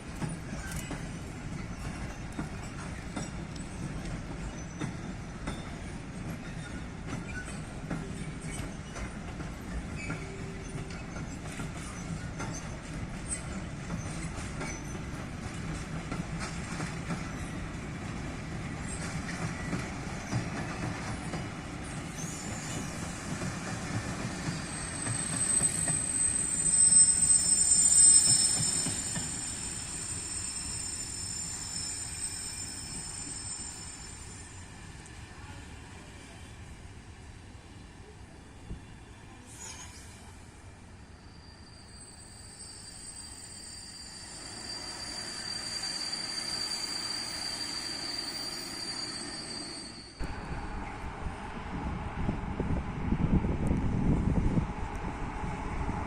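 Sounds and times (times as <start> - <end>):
train rumbling past: 0.0 - 56.0
high-pitched wheel squeal: 22.1 - 23.3, 24.3 - 34.6, 41.1 - 50.7.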